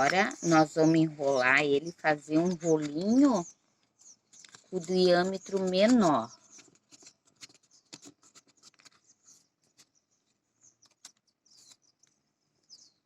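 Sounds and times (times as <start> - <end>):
cardboard tube crackling: 4.3 - 10.0.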